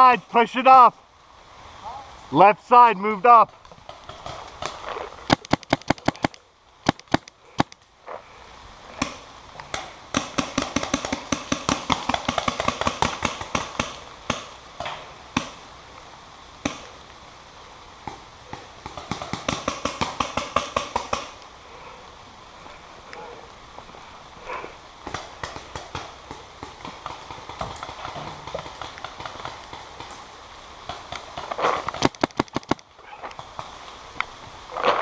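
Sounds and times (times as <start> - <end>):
paintball markers firing: 5.3 - 7.8, 32.0 - 32.8.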